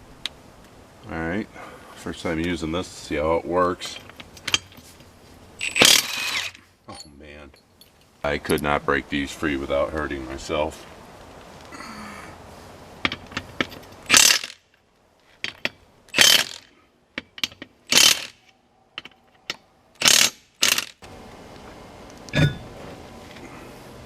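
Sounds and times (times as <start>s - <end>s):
impact wrench bursts: 5.6s - 6.6s, 14.0s - 14.6s, 16.1s - 16.7s, 17.4s - 18.4s, 20.0s - 21.0s.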